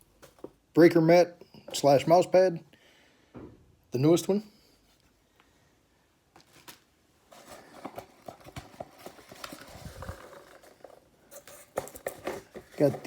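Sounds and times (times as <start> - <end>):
rummaging in cardboard box: 6.4 - 13.0.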